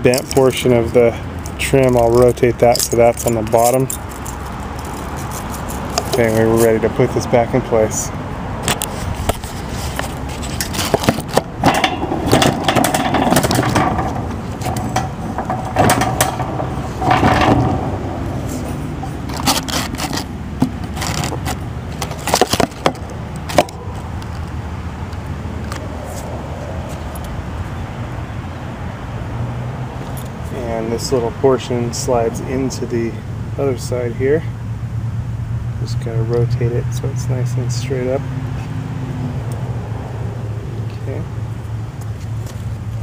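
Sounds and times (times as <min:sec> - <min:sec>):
steady low hum: 0:00.7 - 0:27.4
metal lock parts clicking: 0:10.0 - 0:24.5.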